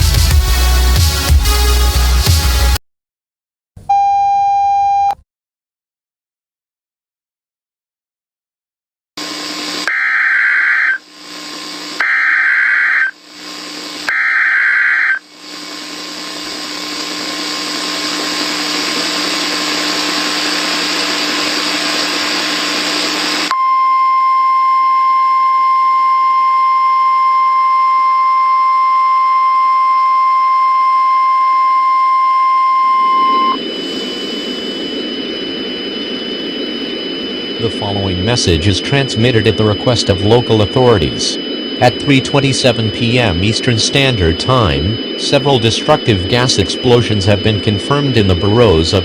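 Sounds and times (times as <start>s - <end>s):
hissing static: 9.2s - 23.5s, 32.8s - 49.0s
dull noise with faint whine: 9.2s - 49.0s
screechy data bursts: 9.8s - 11.1s, 12.0s - 13.2s, 14.1s - 15.3s, 32.8s - 49.0s
steady alert tone: 37.6s - 49.0s.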